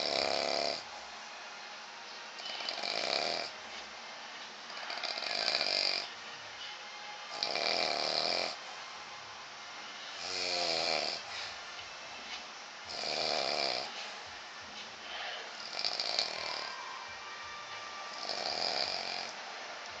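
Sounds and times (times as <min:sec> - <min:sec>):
man snoring: 0:00.0 - 0:00.8, 0:02.6 - 0:03.6, 0:04.8 - 0:06.1, 0:07.3 - 0:08.6, 0:10.1 - 0:11.3, 0:12.9 - 0:13.9, 0:15.5 - 0:16.8, 0:18.1 - 0:19.4.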